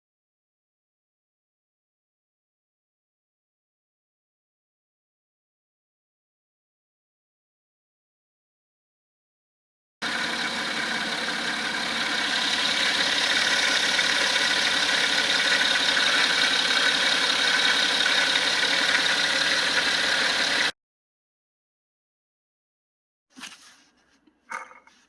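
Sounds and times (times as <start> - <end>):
diesel engine idling: 10.0 - 20.7
gravelly belt drive noise: 10.0 - 20.7.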